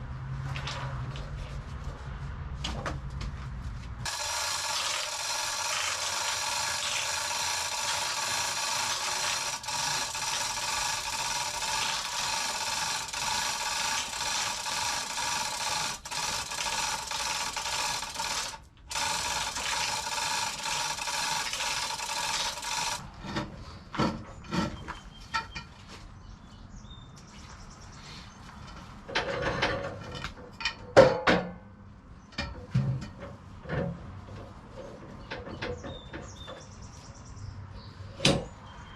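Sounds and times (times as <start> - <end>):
bandsaw cutting log: 4.1 - 23.0.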